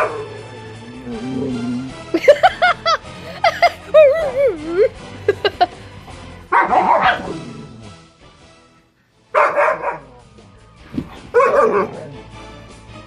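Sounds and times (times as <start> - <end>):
dogs barking and snarling: 0.0 - 4.5, 5.3 - 8.0, 9.4 - 10.3, 11.0 - 12.4.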